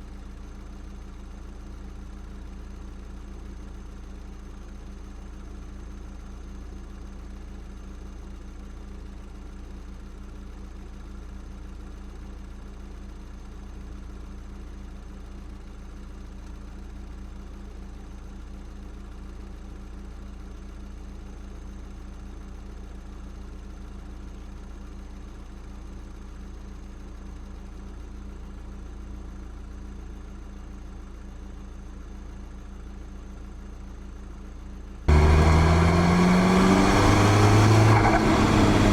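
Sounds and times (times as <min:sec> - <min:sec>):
car engine idling: 0:35.1 - 0:38.9.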